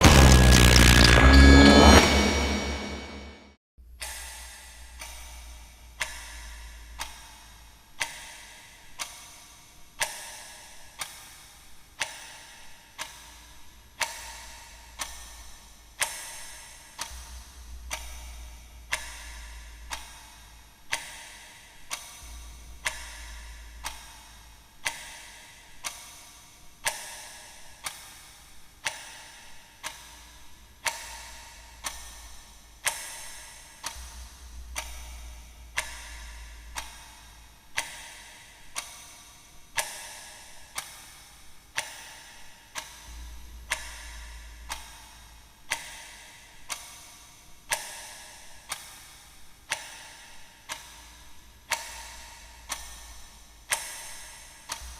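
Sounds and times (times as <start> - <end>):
clock ticking with ringing tail: 0.0 - 3.4, 4.0 - 54.9
low hum: 0.0 - 3.6.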